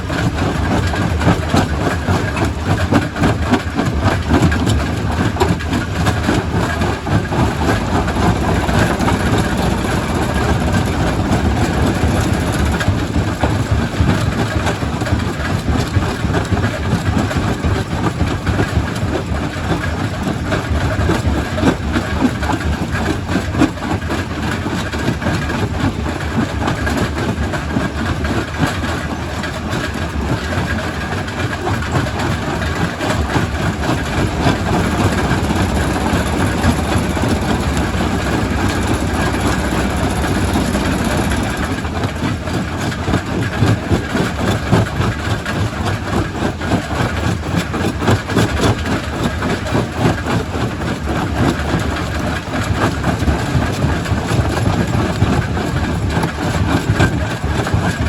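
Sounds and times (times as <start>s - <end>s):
heavy machine noise: 0.0s - 14.6s, 31.0s - 45.6s.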